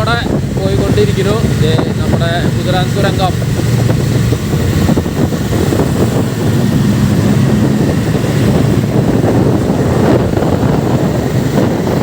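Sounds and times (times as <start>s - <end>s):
motorcycle engine: 0.0s - 12.0s
traffic noise: 0.0s - 12.0s
wind buffeting microphone: 0.0s - 12.0s.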